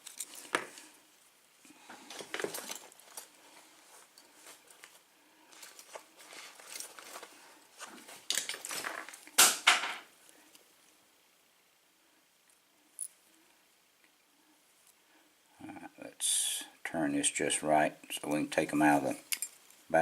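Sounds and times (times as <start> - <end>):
small metal parts clicking: 19.3 - 19.6.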